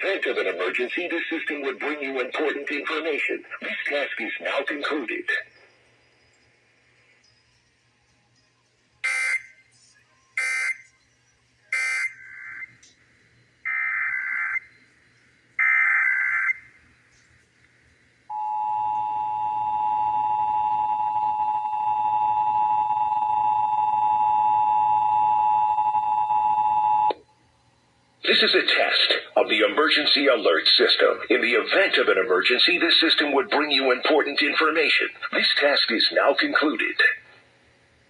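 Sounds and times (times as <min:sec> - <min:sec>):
two-tone attention signal: 0:18.3 - 0:27.1.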